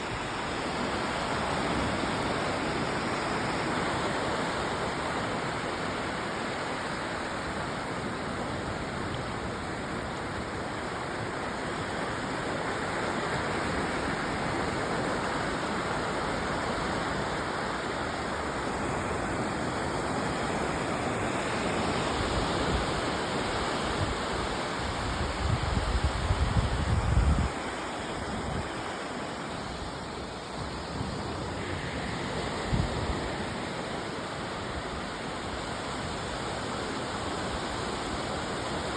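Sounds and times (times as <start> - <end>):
running water rushing: 0.0 - 38.9.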